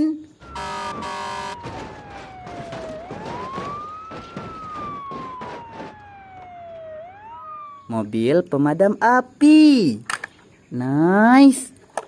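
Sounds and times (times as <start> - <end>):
wailing siren: 0.4 - 8.2
knocks and rustles: 0.8 - 6.9.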